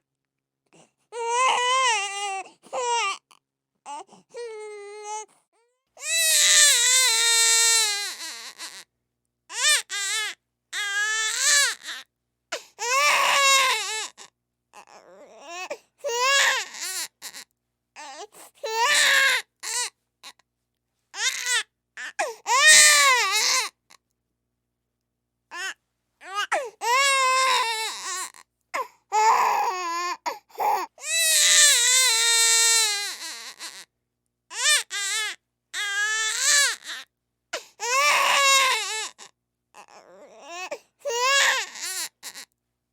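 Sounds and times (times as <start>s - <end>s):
infant crying: 1.1s - 5.3s, 6.0s - 8.9s, 9.5s - 20.4s, 21.2s - 23.9s, 25.5s - 33.9s, 34.5s - 42.5s
infant gasping for breath: 3.9s - 4.4s, 26.5s - 26.8s, 28.8s - 29.1s, 30.2s - 30.9s, 37.6s - 37.8s.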